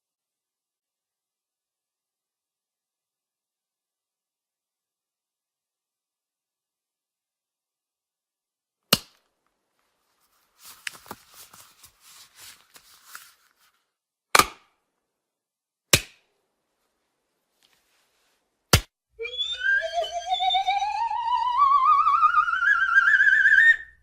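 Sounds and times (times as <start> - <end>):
sharp cartoon cracks: 14.3 - 14.7, 15.9 - 16.3.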